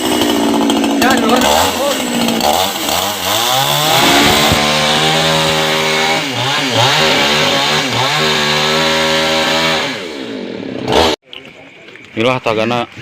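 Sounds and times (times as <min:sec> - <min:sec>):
chainsaw cutting through tree: 0:00.0 - 0:11.2.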